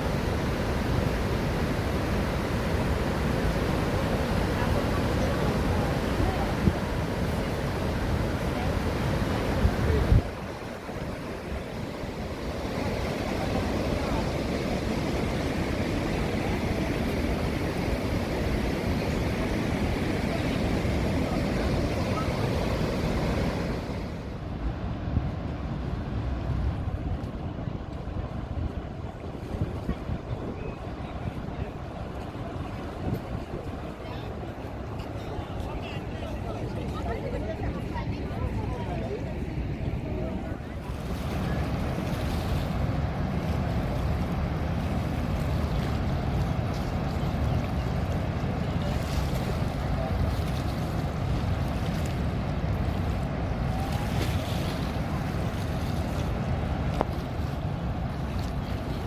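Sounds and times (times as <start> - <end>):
waterfall rushing: 0.0 - 24.3.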